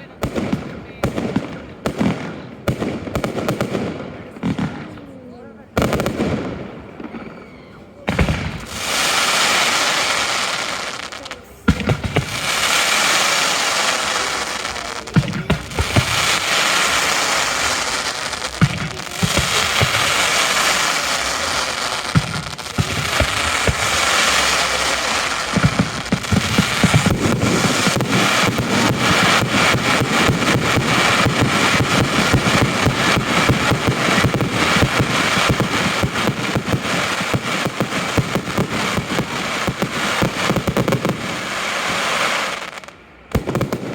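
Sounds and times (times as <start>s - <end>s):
firework bangs and pops: 0.0s - 5.2s, 5.8s - 43.9s
crackling hiss of fireworks: 0.0s - 43.9s
firework bursts: 0.0s - 43.9s.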